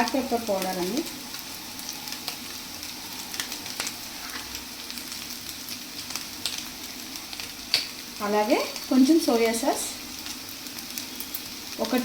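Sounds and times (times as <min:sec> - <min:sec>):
noodles sizzling in a hot pan: 0:00.0 - 0:12.0
spatula scraping a pan: 0:03.8 - 0:04.6.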